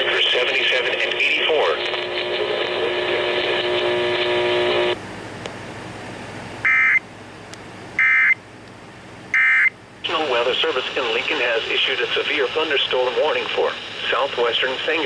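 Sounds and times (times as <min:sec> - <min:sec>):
steady multi-tone buzz: 0:00.0 - 0:05.0.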